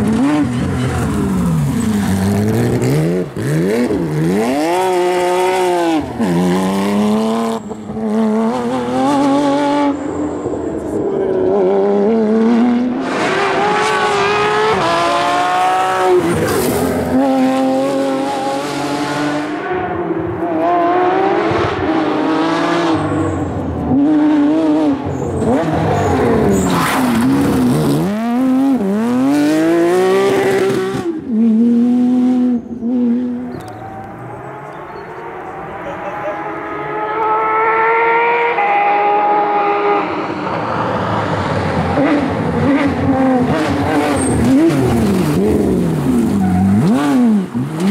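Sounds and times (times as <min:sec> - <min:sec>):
race car engine revving: 0:00.0 - 0:47.9.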